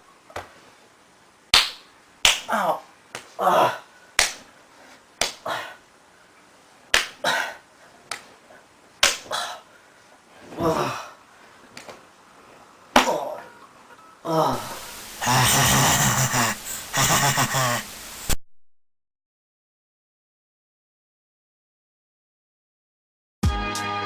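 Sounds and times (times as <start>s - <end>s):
sharp slaps: 1.5s - 2.5s, 4.2s - 4.4s, 5.2s - 5.4s, 6.9s - 7.2s, 9.0s - 9.3s
pained cry or groan: 3.4s - 3.9s, 10.6s - 11.2s, 14.2s - 17.9s.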